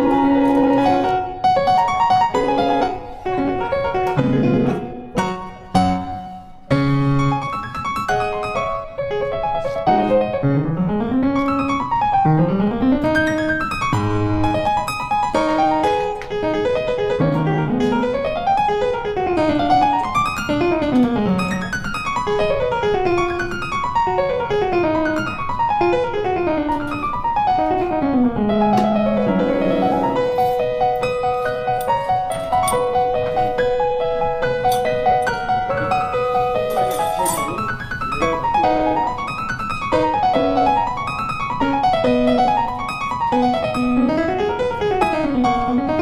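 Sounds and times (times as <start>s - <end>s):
piano music: 0.0s - 46.0s.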